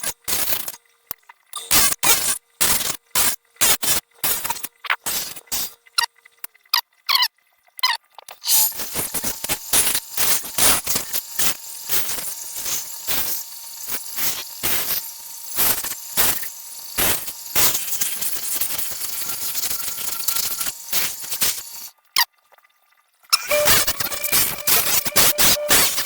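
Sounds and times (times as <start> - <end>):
scrubbing metal parts: 23.4 - 26.0.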